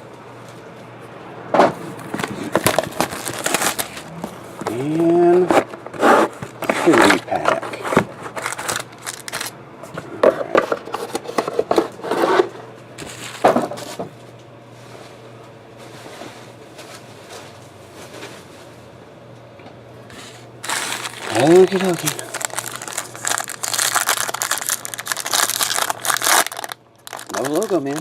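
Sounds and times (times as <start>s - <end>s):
low steady hum: 0.0s - 28.0s
trading cards being handled: 20.2s - 28.0s.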